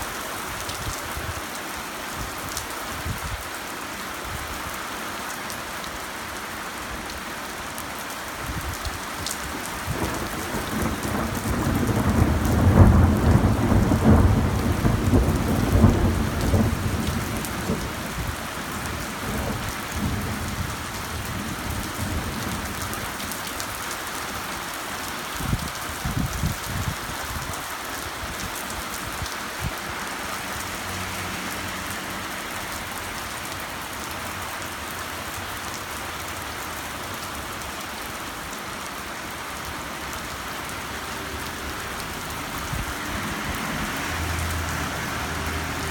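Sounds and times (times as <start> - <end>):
heavy rain falling: 0.0 - 45.9
low rolling thunder: 9.8 - 23.2.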